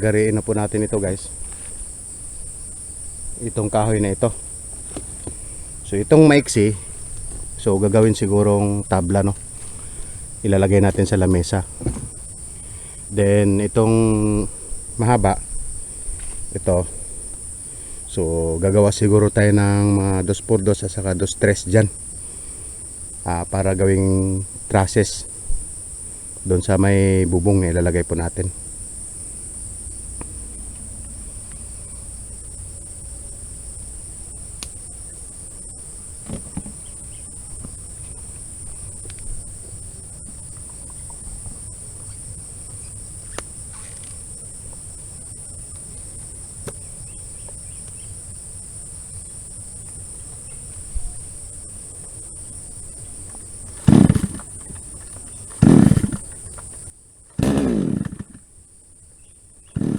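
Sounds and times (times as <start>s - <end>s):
crickets chirring: 0.0s - 59.9s
chainsaw engine starting: 3.1s - 13.0s, 36.2s - 36.9s, 53.2s - 58.6s, 59.6s - 59.9s.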